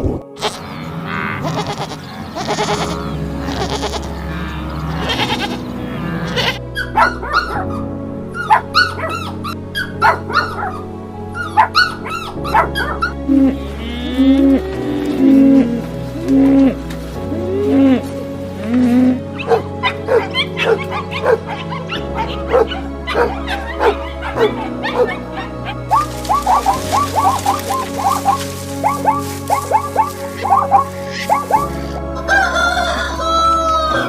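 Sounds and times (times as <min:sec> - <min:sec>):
background music: 0:00.0 - 0:34.0
low drawn-out animal calls: 0:00.4 - 0:32.2
dog yipping: 0:06.4 - 0:13.2, 0:19.4 - 0:31.7.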